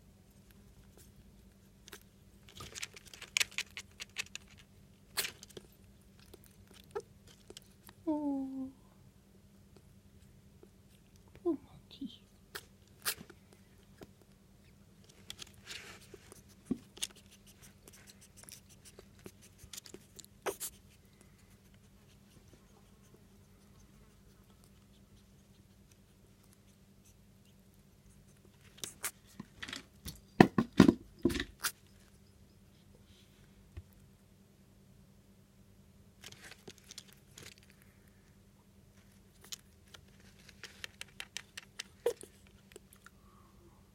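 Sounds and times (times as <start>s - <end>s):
rat scratching and clicking: 1.8s - 8.0s, 15.0s - 30.2s, 39.0s - 43.1s.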